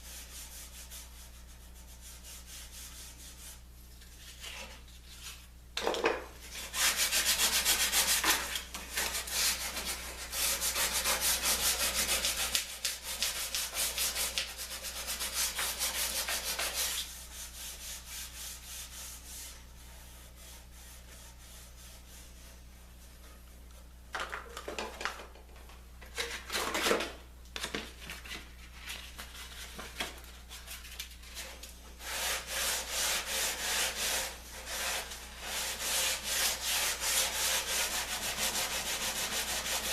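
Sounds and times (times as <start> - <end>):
sandpaper scratching wood: 6.5 - 22.6, 30.4 - 39.9.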